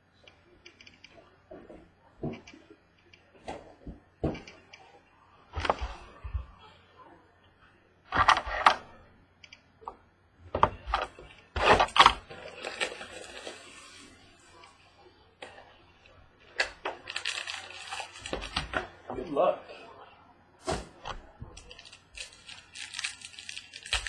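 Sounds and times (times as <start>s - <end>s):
cardboard and wrappers rustling: 10.9s - 14.8s, 16.4s - 19.0s, 20.7s - 24.0s.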